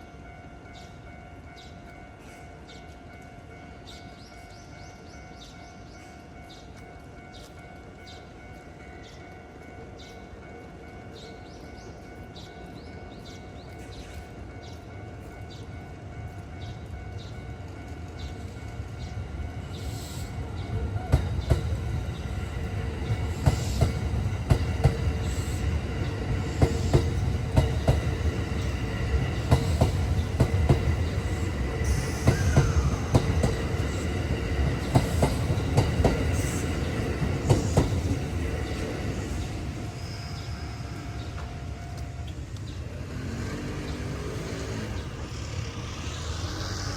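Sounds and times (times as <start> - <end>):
electric train rumbling past: 0.0 - 46.9
wheels clacking over rails: 20.4 - 39.7.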